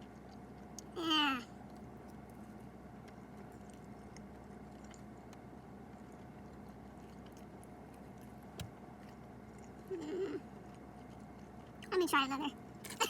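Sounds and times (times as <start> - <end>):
faint chewing: 0.0 - 13.0
steady low hum: 0.0 - 13.0.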